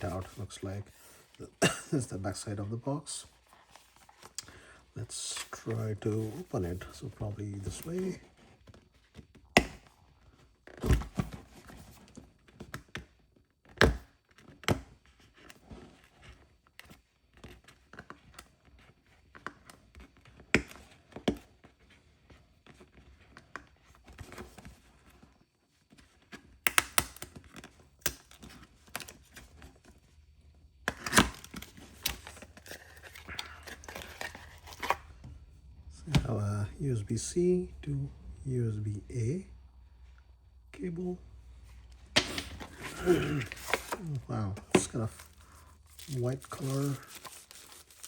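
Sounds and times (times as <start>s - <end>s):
paper and plastic rustling: 30.8s - 36.6s, 41.6s - 48.0s.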